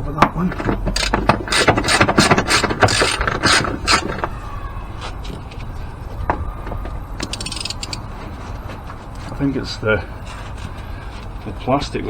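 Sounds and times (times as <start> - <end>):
ratchet wrench clicking: 0.9 - 4.1, 7.2 - 8.0.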